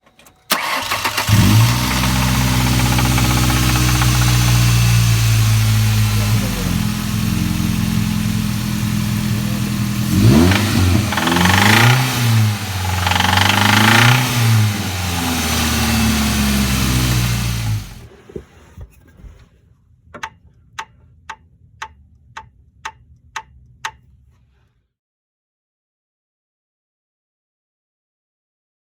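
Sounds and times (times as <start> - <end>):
engine idling and revving: 0.5 - 18.1
steady clicking: 10.2 - 12.3, 12.9 - 14.2, 20.2 - 24.1.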